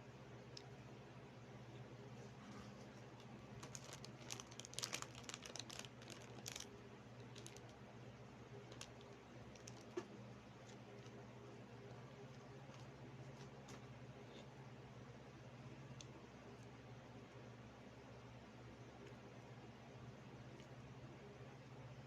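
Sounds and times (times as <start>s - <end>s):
faint low hum: 0.0s - 22.0s
soft crinkling and clicking: 2.5s - 7.8s, 8.7s - 11.2s, 11.8s - 14.5s.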